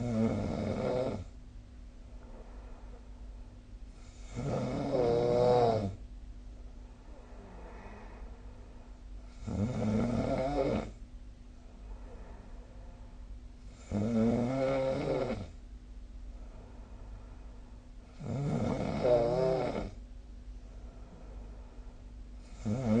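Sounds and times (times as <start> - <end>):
person snoring: 0.0 - 1.3, 4.0 - 6.0, 9.3 - 11.0, 13.7 - 15.6, 18.1 - 20.0, 22.4 - 23.0.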